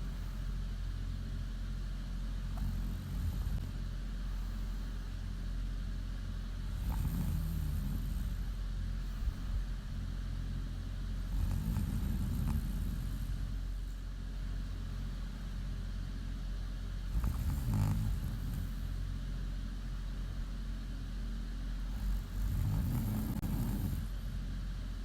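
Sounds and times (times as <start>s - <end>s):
low steady hum: 0.0s - 25.0s
woman snoring: 2.4s - 3.7s, 6.6s - 9.6s, 11.2s - 13.7s, 17.0s - 18.9s, 21.9s - 24.4s.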